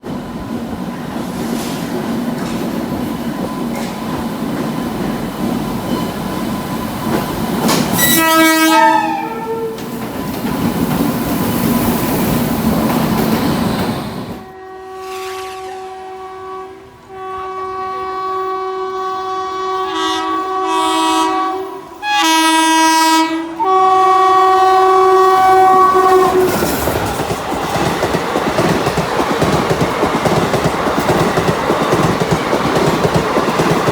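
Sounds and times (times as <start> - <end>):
rumbling train with wheel clatter: 0.0 - 21.5, 22.2 - 33.9
two-tone train horn: 7.7 - 9.9, 14.4 - 26.8.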